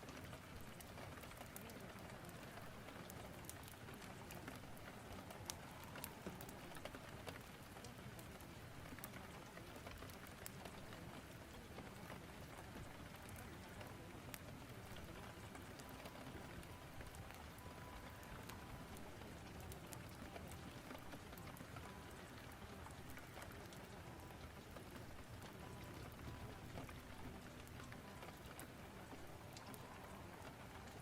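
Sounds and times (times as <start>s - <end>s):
rain falling: 0.0s - 31.0s.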